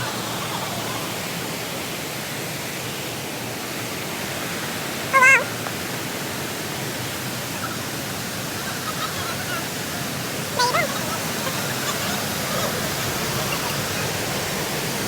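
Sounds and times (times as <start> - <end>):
waterfall rushing: 3.6 - 15.0
loud wavering call: 5.1 - 5.5, 10.5 - 14.7.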